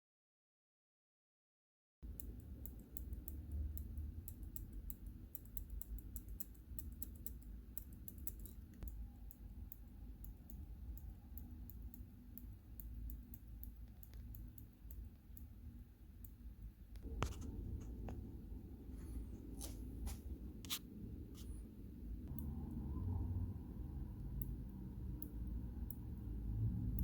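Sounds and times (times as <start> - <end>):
low steady rumble: 2.0 - 27.0.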